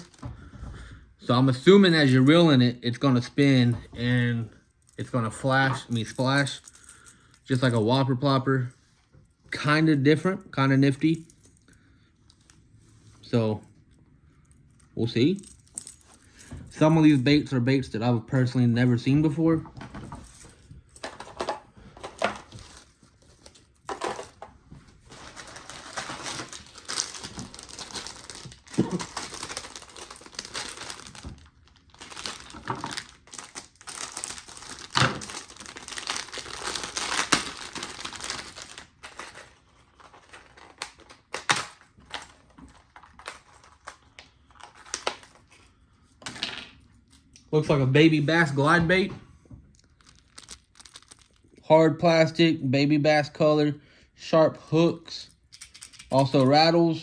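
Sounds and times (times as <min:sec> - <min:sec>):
plastic packaging crinkling: 0:25.0 - 0:45.5.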